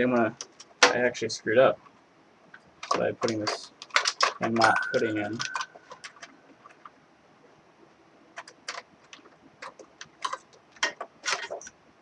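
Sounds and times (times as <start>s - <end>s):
computer hardware clicks and taps: 2.5s - 7.0s, 8.3s - 11.8s.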